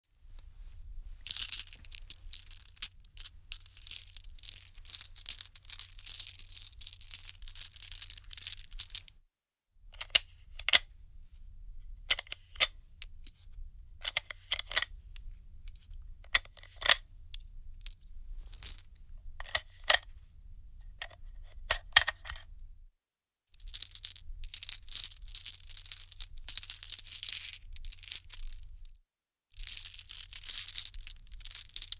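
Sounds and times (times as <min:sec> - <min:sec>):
metal cartridges jingling: 0:01.3 - 0:09.1, 0:23.6 - 0:28.5, 0:29.6 - 0:31.9.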